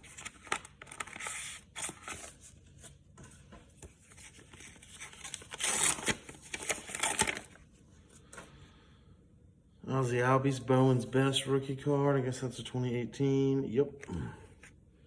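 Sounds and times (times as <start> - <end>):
packaging rustling and tearing: 0.0 - 2.5, 3.8 - 7.6.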